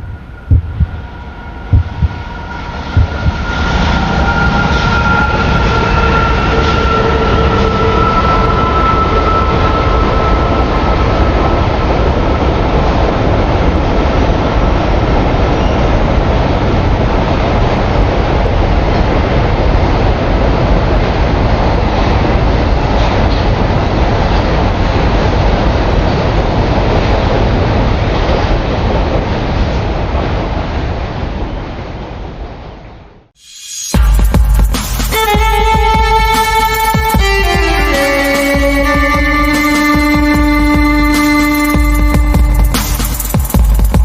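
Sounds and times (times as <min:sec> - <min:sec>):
train running on rails: 0:00.0 - 0:44.0.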